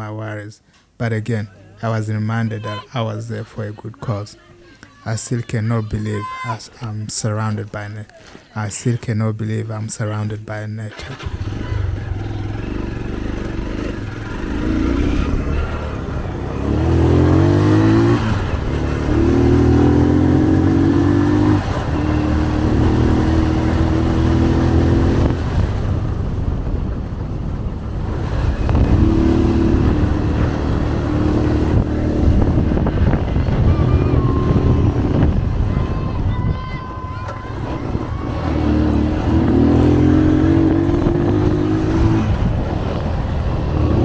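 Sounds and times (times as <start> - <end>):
motorcycle engine accelerating: 11.1 - 44.0.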